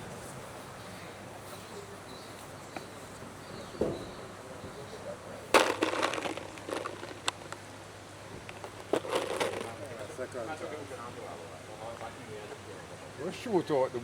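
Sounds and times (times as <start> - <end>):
crackling and rattling: 5.5 - 7.7, 8.4 - 10.1.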